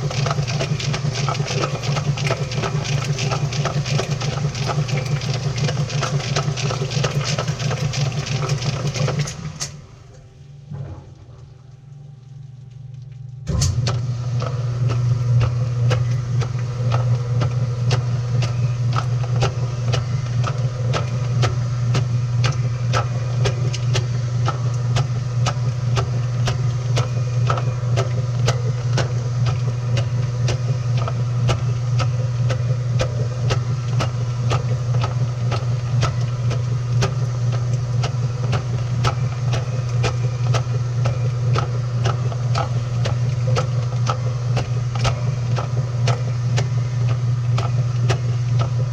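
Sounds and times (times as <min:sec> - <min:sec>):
washing machine motor hum: 0:00.0 - 0:48.9.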